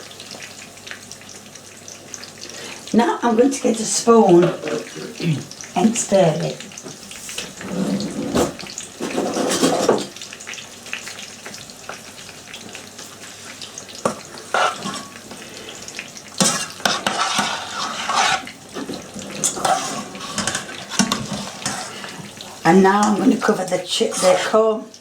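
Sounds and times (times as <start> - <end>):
pan sizzling: 0.0 - 25.0
spoon scraping a pan: 7.2 - 10.2, 14.0 - 15.4, 16.4 - 24.7.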